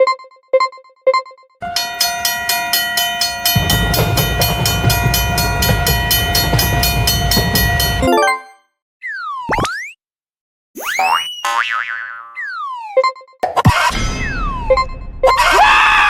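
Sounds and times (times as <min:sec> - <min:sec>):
train rumbling past: 0:01.6 - 0:08.0
level crossing bell ringing: 0:01.6 - 0:08.6
steady held tone: 0:01.6 - 0:08.6.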